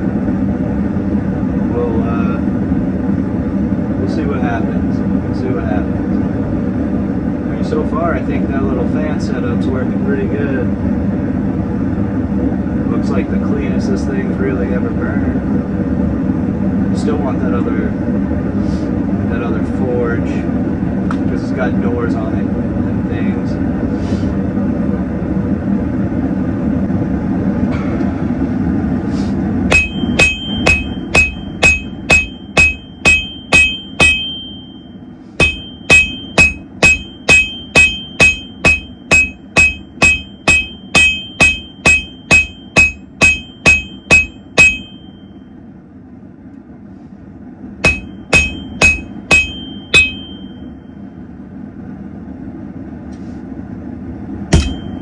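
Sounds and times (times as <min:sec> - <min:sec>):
hammer striking steel on anvil: 0:29.7 - 0:45.3, 0:47.8 - 0:50.7, 0:54.6 - 0:55.0.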